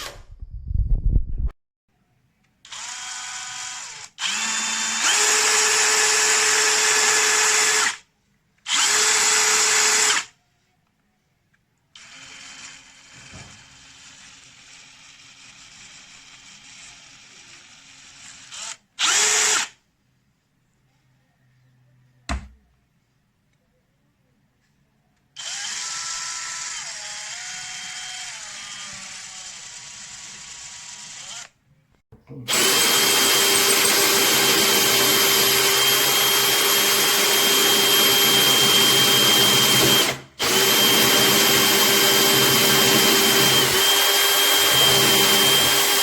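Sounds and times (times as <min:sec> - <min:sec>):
cordless drill whining: 0:02.7 - 0:08.0, 0:08.7 - 0:10.3, 0:12.0 - 0:19.8, 0:25.4 - 0:31.5, 0:32.5 - 0:46.0
drill click: 0:32.5 - 0:46.0.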